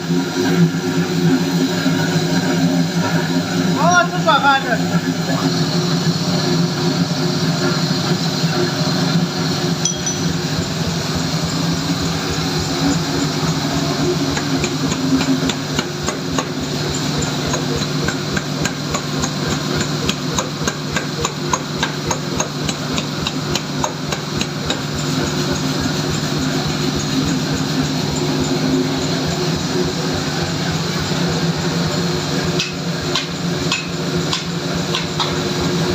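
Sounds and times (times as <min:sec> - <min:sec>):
low machinery hum: 0:00.0 - 0:35.9
hammer striking metal: 0:09.8 - 0:10.6, 0:32.6 - 0:35.4.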